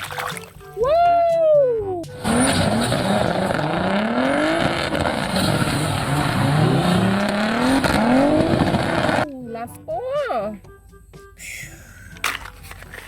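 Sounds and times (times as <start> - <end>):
race car engines revving: 2.0 - 9.3.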